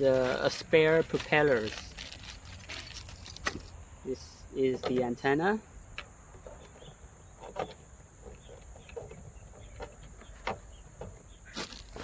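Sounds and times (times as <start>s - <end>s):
faint rustling: 0.0s - 3.8s
small parts clicking and knocking: 0.0s - 3.8s.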